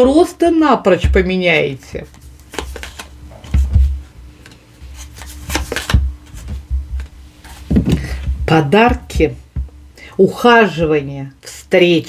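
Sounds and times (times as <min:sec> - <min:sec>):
faint steady hum: 0:00.0 - 0:12.0
cards rustling and tapping: 0:01.1 - 0:09.8
dull knocks: 0:07.7 - 0:09.8.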